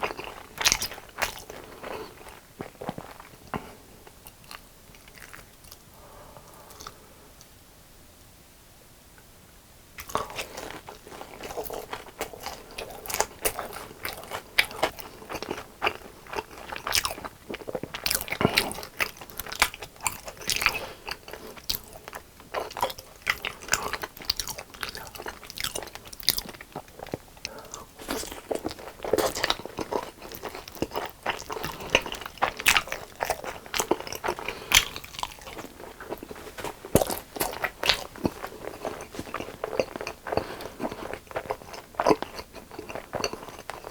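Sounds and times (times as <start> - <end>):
crunching fried chicken: 0.0 - 5.8, 10.0 - 43.9.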